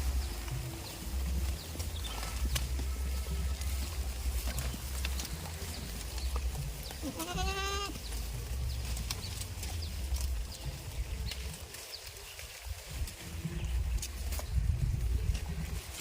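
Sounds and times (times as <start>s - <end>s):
goat bleating: 0.0s - 10.8s.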